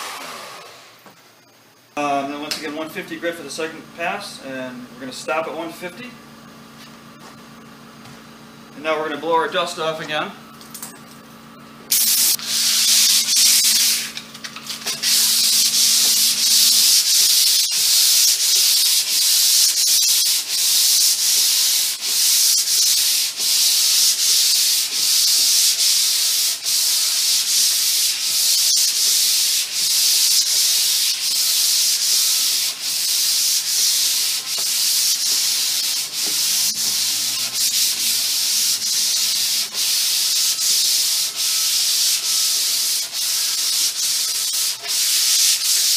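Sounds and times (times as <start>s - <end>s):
sandpaper strokes on wood: 11.9s - 14.2s, 14.8s - 45.9s.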